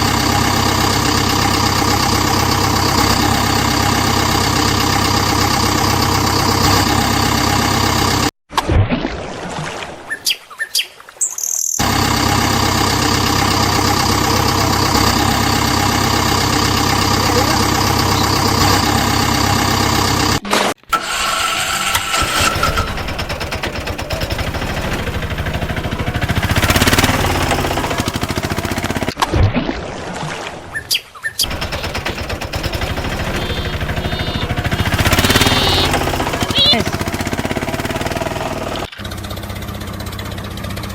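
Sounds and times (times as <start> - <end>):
engine running: 0.0 - 8.4, 11.8 - 29.4, 31.4 - 40.9
birds chirping: 10.1 - 11.8, 17.1 - 18.8, 30.7 - 37.1.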